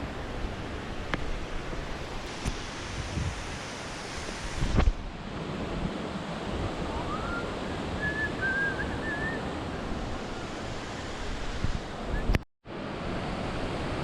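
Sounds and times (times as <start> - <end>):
waterfall rushing: 0.0 - 5.6, 6.2 - 12.1
thin whistled notes: 7.1 - 9.8.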